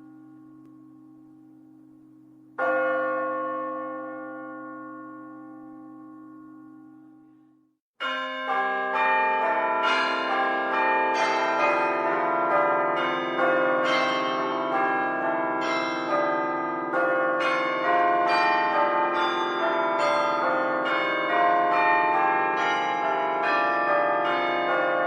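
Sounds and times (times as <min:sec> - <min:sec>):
church bells ringing: 0:00.0 - 0:07.2, 0:08.0 - 0:25.0.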